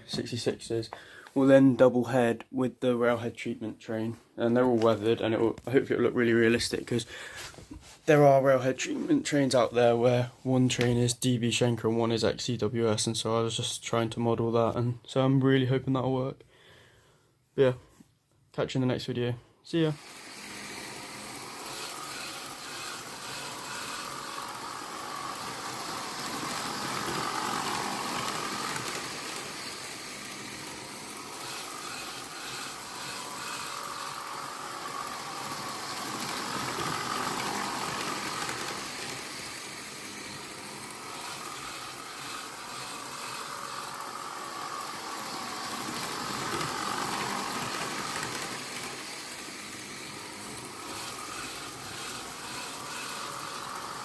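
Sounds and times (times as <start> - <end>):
model trains whirring on rails: 19.8 - 54.0.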